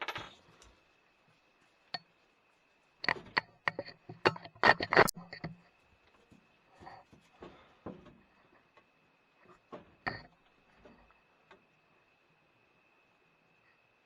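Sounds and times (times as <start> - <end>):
handling clicks and knocks: 3.0 - 8.9, 9.6 - 11.6.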